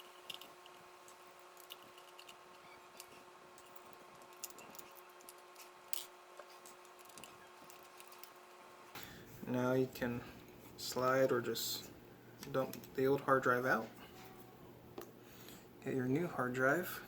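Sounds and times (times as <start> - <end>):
faint hum: 0.0 - 17.0.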